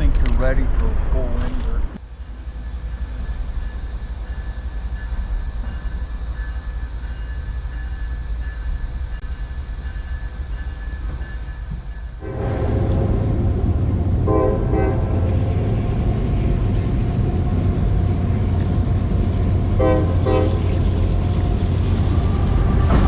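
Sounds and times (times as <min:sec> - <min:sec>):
train rumbling past: 0:00.0 - 0:23.0
train horn: 0:12.2 - 0:15.4, 0:19.8 - 0:20.8.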